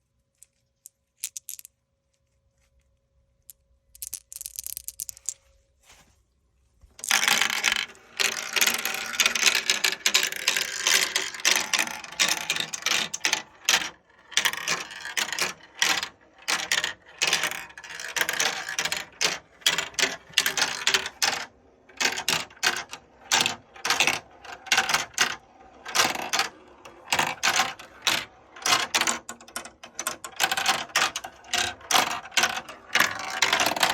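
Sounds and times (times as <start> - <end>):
marbles rattling down plastic track: 7.0 - 33.9.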